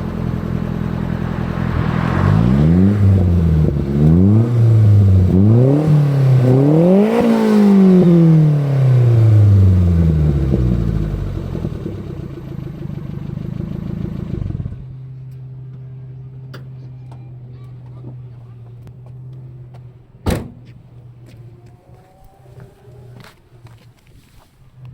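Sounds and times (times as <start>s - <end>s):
car engine revving: 0.0s - 14.8s
car engine idling: 0.0s - 20.2s.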